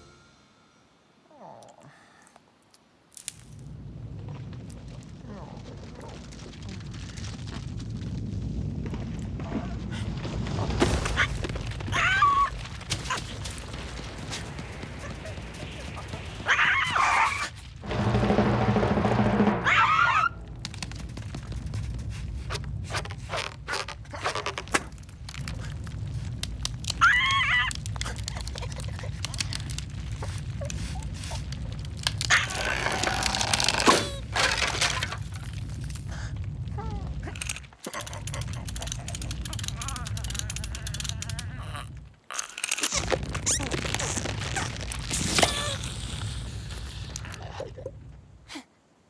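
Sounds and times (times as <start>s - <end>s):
scraping and clicking noises: 20.6s - 36.2s, 37.2s - 47.5s
squeaky glides: 23.0s - 36.1s.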